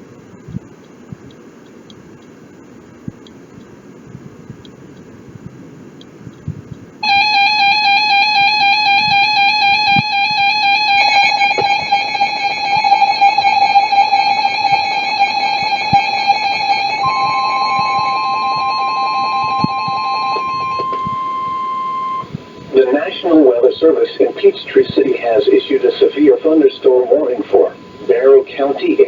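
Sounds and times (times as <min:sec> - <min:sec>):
steady single-pitch tone: 0:07.0 - 0:29.0
warbling electronic alarm: 0:07.0 - 0:29.0.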